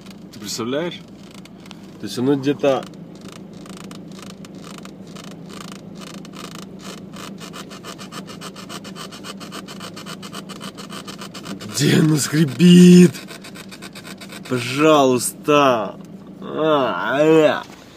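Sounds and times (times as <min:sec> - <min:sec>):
plastic trim creaking: 0:00.0 - 0:11.7
steady low hum: 0:00.0 - 0:17.9.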